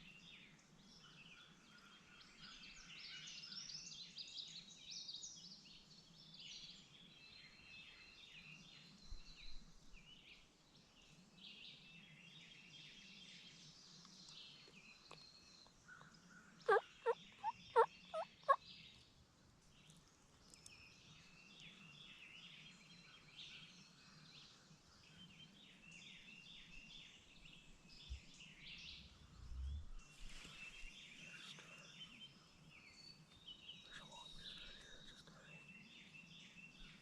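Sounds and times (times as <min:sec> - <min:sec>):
songbirds chirping: 0:00.0 - 0:37.0
turkey yelps: 0:16.7 - 0:18.6.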